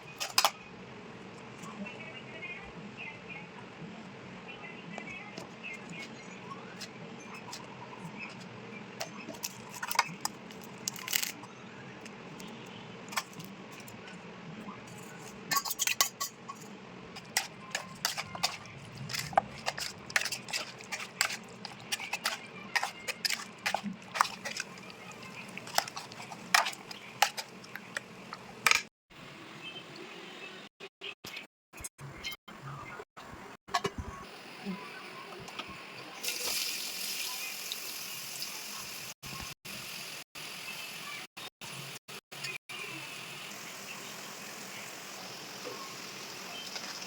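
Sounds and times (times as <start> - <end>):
utensils clinking on cookware: 0.1 - 0.6, 9.0 - 11.5, 14.9 - 28.9.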